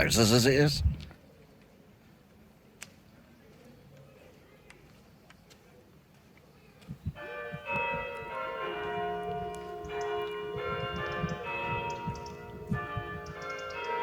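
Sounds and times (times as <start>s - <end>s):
church bells ringing: 7.1s - 14.0s.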